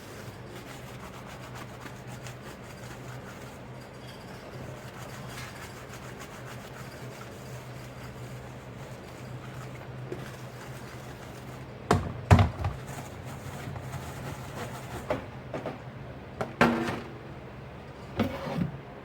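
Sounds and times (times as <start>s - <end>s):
dishes scrubbed by hand: 0.0s - 11.8s
dishes scraping and knocking: 11.9s - 13.9s, 16.4s - 17.2s, 18.0s - 18.8s.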